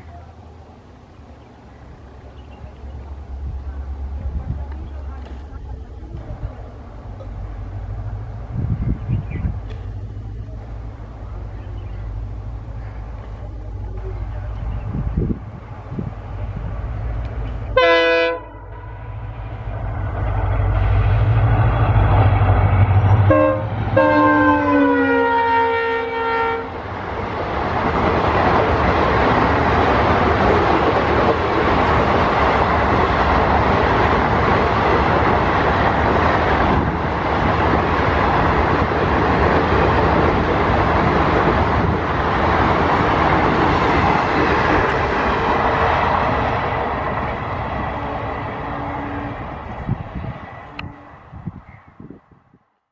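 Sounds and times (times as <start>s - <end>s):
train wheels rumbling on rails: 0.0s - 52.3s
train horn blasts: 17.7s - 19.3s, 23.0s - 26.8s, 48.0s - 49.5s, 50.7s - 51.4s.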